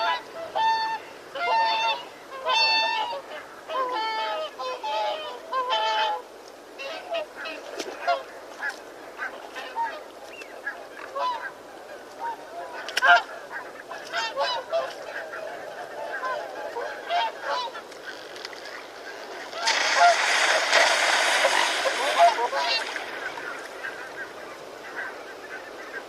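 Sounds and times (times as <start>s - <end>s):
flock of birds calling: 6.8s - 26.0s.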